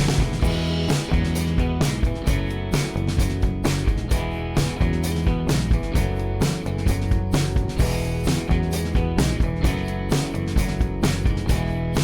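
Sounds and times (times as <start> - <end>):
guitar music: 0.0 - 12.0
steady drum beat: 0.0 - 12.0.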